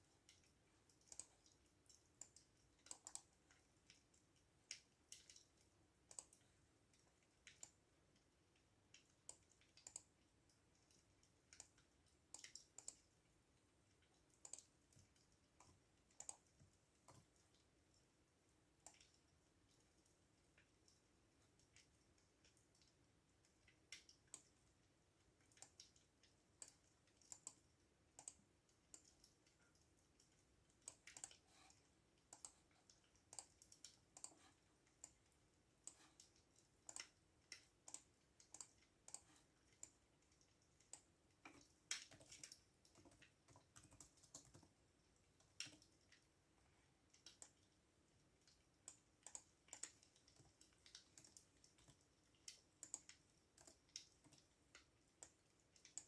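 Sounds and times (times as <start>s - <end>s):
computer keyboard typing: 0.3s - 3.4s, 30.8s - 35.3s, 41.9s - 44.8s, 48.8s - 54.5s.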